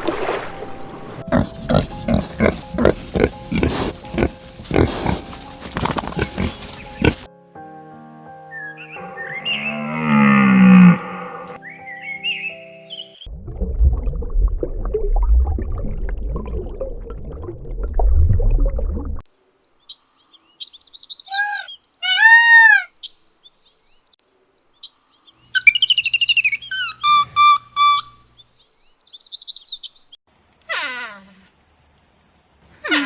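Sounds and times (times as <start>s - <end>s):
bird calls and whistles: 20.6s - 22.8s, 25.6s - 30.2s.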